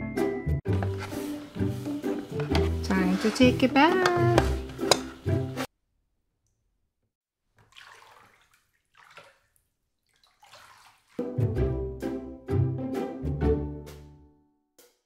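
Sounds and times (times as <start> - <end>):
upbeat background music: 0.0 - 5.7, 11.2 - 14.4.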